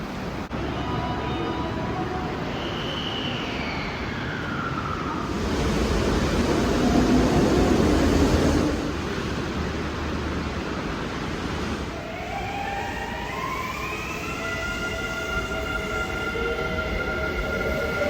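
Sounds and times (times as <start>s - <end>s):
train running rumble: 5.2s - 12.0s.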